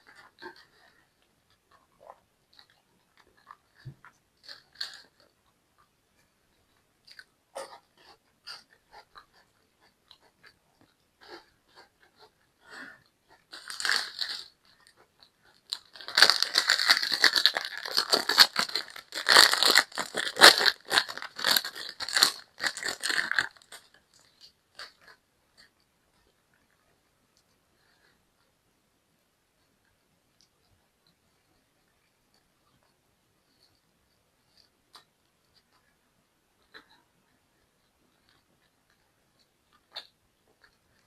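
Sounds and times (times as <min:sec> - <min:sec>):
loud crunching of pastry: 0:13.5 - 0:14.9, 0:15.6 - 0:25.2
mouth clicks and chewing: 0:36.6 - 0:41.0.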